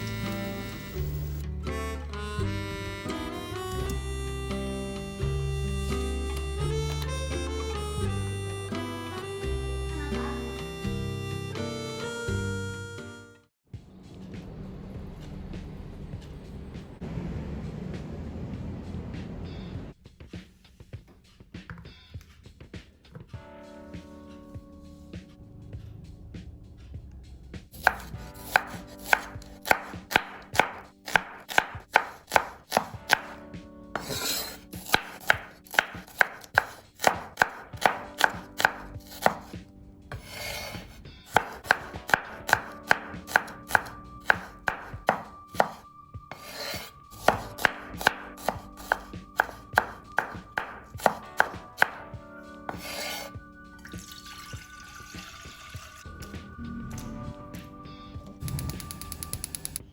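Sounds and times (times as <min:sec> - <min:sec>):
knife chopping on cutting board: 0:27.8 - 0:33.4, 0:34.0 - 0:52.1, 0:52.7 - 0:53.3.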